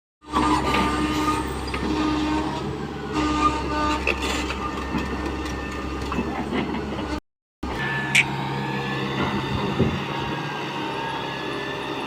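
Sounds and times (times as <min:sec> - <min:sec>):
excavator diesel engine running: 0:00.2 - 0:12.0.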